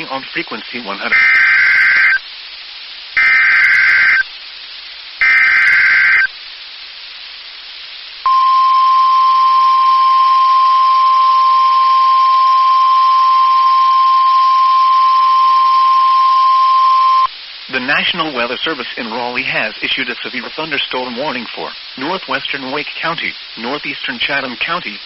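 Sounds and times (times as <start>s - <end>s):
radio hiss: 0.0s - 25.0s
buzzing warble data bursts: 1.1s - 2.2s, 3.2s - 4.3s, 5.2s - 6.4s
steady warning alarm tone: 1.1s - 2.2s, 3.2s - 4.2s, 5.2s - 6.3s, 8.3s - 17.3s.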